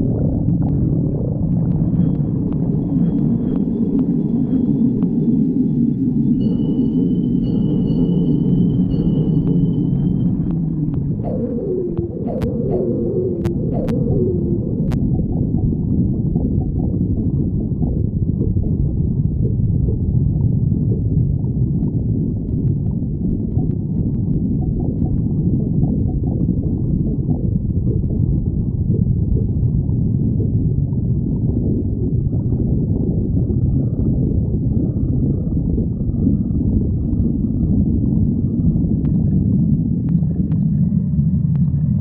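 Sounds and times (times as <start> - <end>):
stomach growling: 0.0 - 5.8, 8.8 - 42.0.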